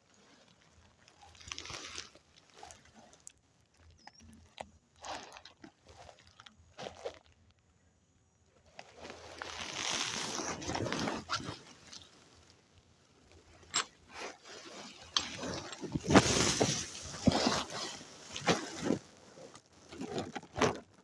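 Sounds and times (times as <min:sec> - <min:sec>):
footsteps crunching through dry leaves: 0:08.9 - 0:12.5, 0:14.1 - 0:19.6.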